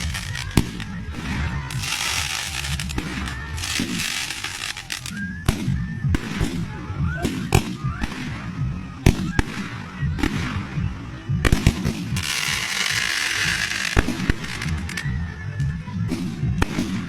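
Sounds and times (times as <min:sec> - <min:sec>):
fireworks hiss: 0:00.0 - 0:05.2, 0:12.1 - 0:15.1
fireworks bangs: 0:00.0 - 0:06.5, 0:11.5 - 0:15.1.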